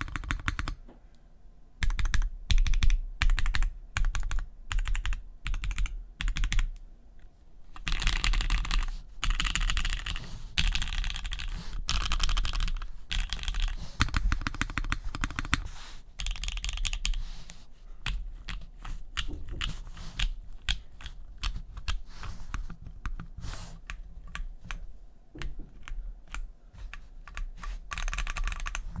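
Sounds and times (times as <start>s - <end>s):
mechanical keyboard typing: 0.0s - 0.8s, 1.8s - 6.8s, 7.8s - 17.2s, 25.8s - 28.9s.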